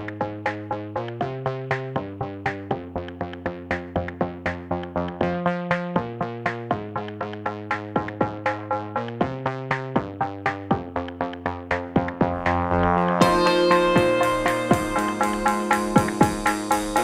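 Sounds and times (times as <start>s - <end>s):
held synth chords: 11.2s - 17.0s
quick synth notes: 12.1s - 17.0s.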